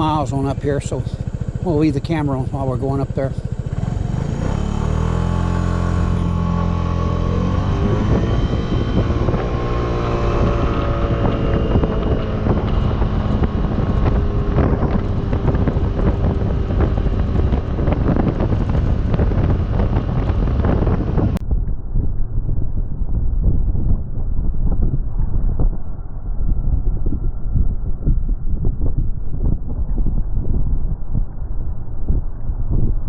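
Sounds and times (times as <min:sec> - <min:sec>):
scooter engine running: 0:00.0 - 0:21.4
wind buffeting microphone: 0:00.0 - 0:33.0.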